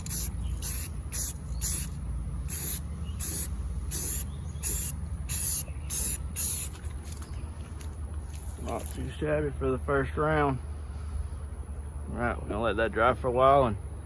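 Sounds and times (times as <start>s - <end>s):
spray paint can hissing bursts: 0.0s - 6.8s.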